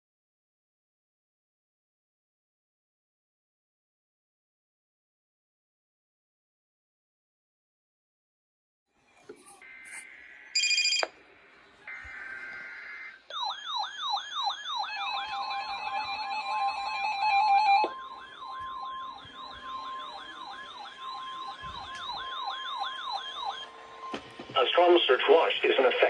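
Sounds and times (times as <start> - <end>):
short beep: 9.8 - 11.1
falling siren-like sweep: 11.9 - 25.6.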